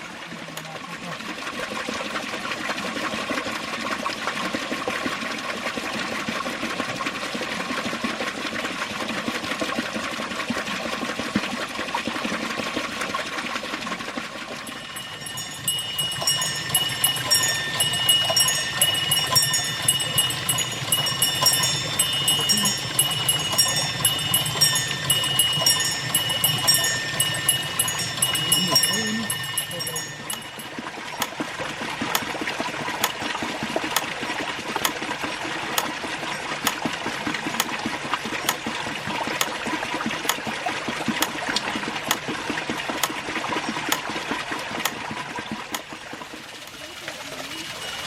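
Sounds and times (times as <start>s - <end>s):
running water: 0.0s - 48.0s
small bells ringing: 14.6s - 30.8s, 47.5s - 48.0s.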